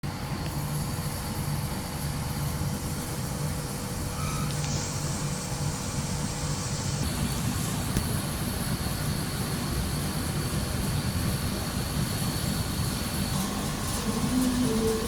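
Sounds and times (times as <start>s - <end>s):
air conditioner unit running: 0.0s - 15.0s
faint high whine: 3.7s - 8.2s, 12.8s - 15.0s
low steady hum: 10.8s - 15.0s.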